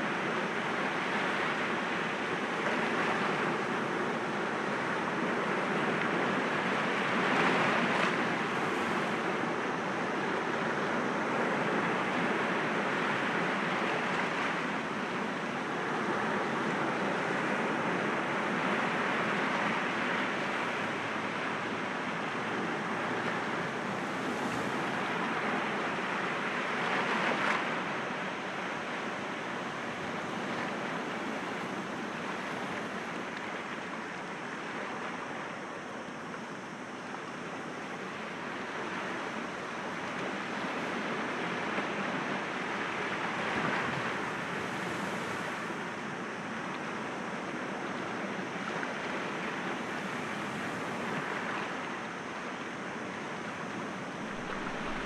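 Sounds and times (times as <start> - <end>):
waves breaking against rocks: 43.2 - 45.7, 54.3 - 55.0.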